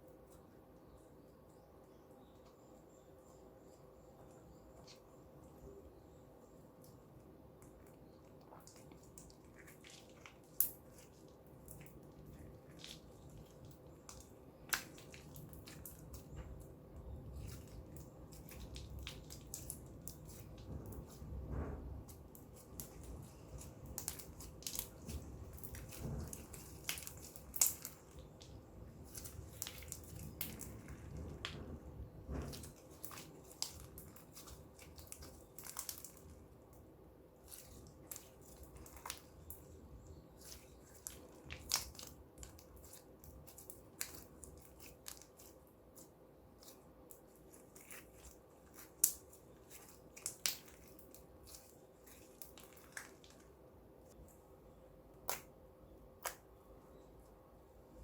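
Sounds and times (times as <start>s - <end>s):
low rumbling handling noise: 19.8s - 34.8s.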